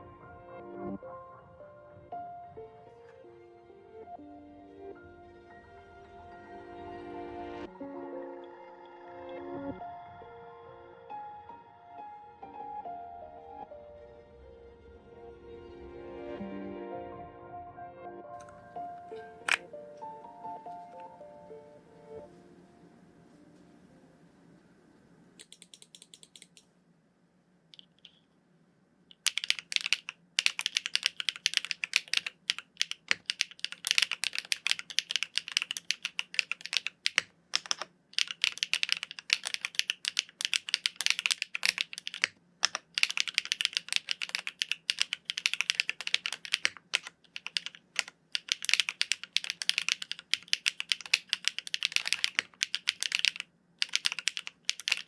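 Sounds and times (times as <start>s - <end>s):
fast typing on mechanical keyboard: 18.4s - 19.7s, 25.4s - 26.6s, 29.1s - 55.0s
faint clicks: 25.0s - 26.8s.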